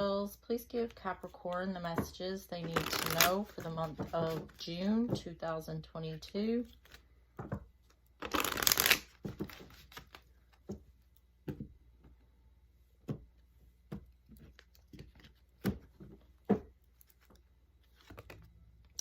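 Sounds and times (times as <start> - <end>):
cards being shuffled: 2.6 - 4.6, 8.2 - 10.8, 16.9 - 18.5.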